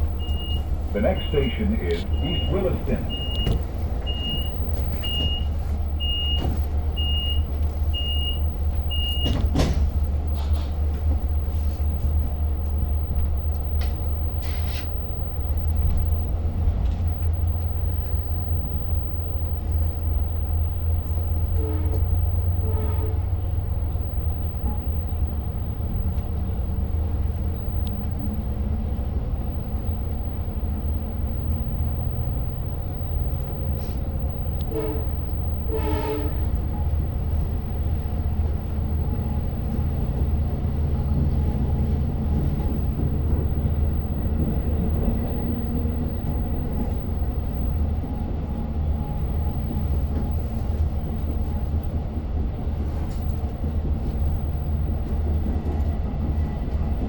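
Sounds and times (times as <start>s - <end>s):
train doors shutting: 0.0s - 15.2s, 29.6s - 48.0s
train rumbling: 0.0s - 57.0s
door warning chime beeping: 0.2s - 9.4s.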